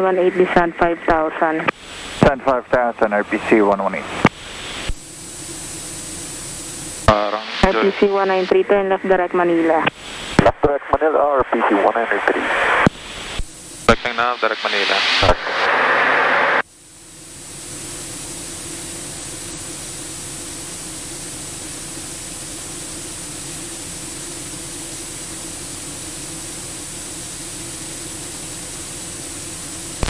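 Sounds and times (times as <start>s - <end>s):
radio intercom hiss: 0.0s - 16.7s
faint aircraft hum: 0.0s - 19.8s.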